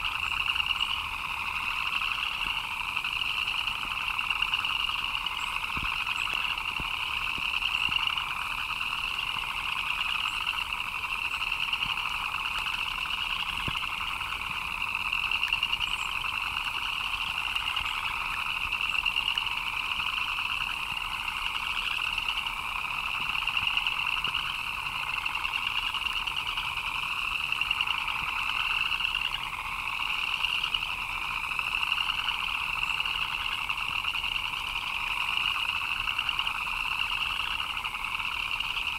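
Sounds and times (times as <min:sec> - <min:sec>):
frogs chirping: 0:00.0 - 0:38.9.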